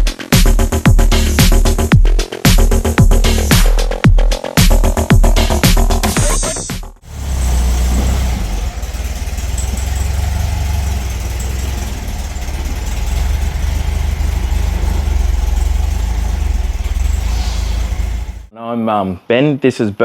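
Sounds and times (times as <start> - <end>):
car engine running at low revs: 7.0 - 18.5.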